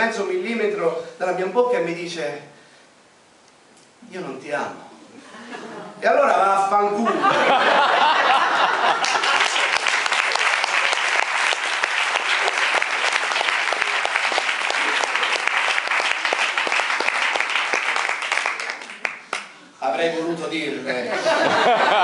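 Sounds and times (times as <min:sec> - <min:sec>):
audience applauding: 0:07.5 - 0:19.6.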